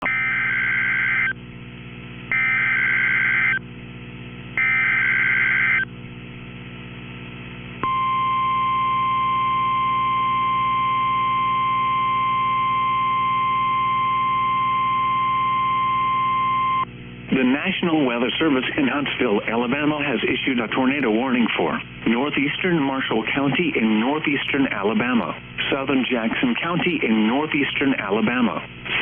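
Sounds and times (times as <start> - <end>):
steady low hum: 0.0 - 29.0
screeching digital data bursts: 0.1 - 1.3, 2.4 - 3.6
single-pitch warning alarm tone: 2.3 - 3.6, 4.6 - 5.9, 7.8 - 16.9.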